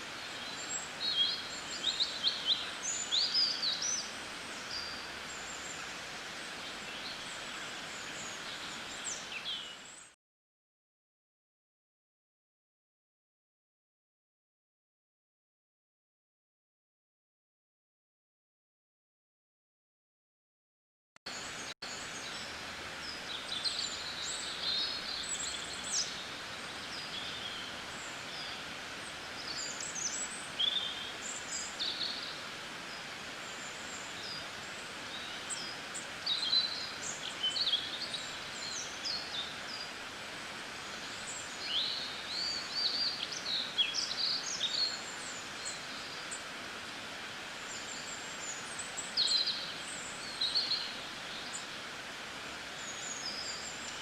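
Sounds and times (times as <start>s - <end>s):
steady background hiss: 0.0s - 10.1s, 21.3s - 54.0s
songbirds chirping: 0.0s - 10.2s, 21.3s - 54.0s.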